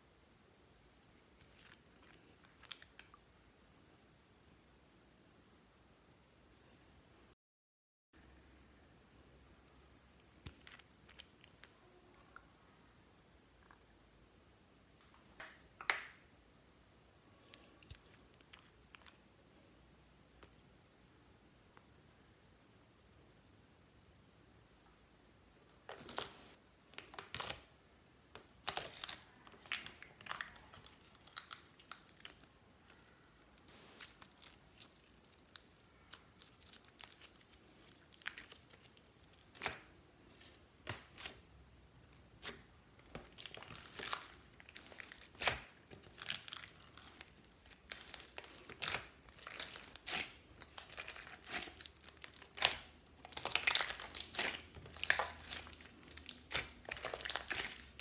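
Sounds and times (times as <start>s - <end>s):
slime crackling and popping: 28.4s - 41.4s, 42.4s - 58.0s.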